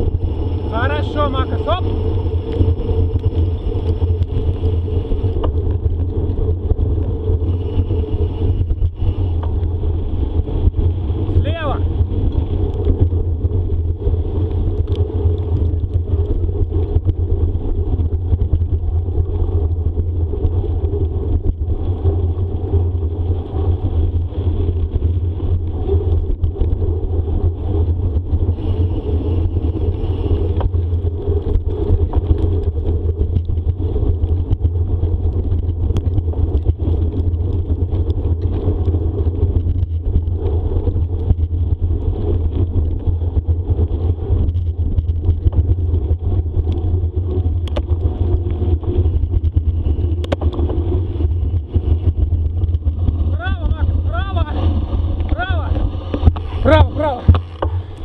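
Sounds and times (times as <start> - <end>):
bicycle tyres rolling on trail: 0.0 - 58.0
wind buffeting microphone: 0.0 - 58.0
light bike clatter: 28.5 - 43.1, 54.8 - 58.0.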